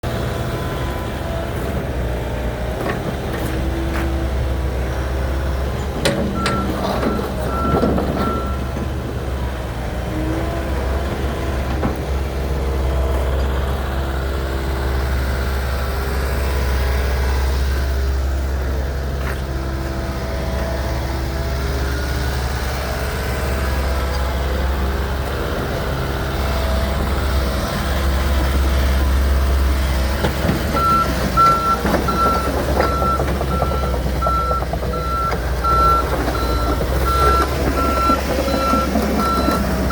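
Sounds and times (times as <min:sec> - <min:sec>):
excavator diesel engine running: 0:00.0 - 0:39.9
reversing alarm beeping: 0:06.4 - 0:08.7, 0:30.8 - 0:39.9.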